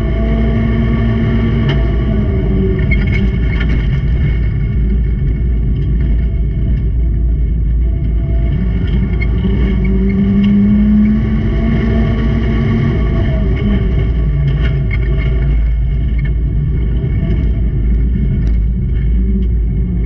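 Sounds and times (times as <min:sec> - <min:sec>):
racing car engines: 0:00.0 - 0:20.0.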